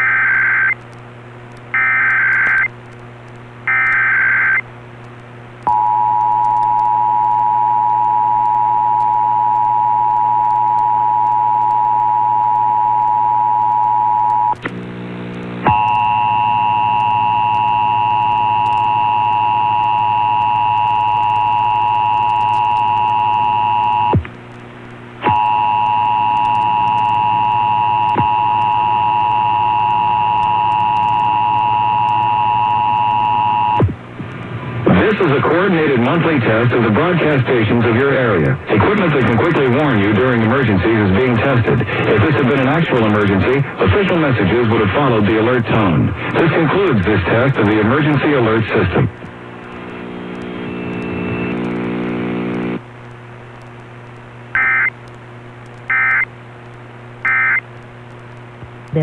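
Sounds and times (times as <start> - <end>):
digital data tone bursts: 54.6 - 54.9, 55.9 - 56.3, 57.3 - 57.6.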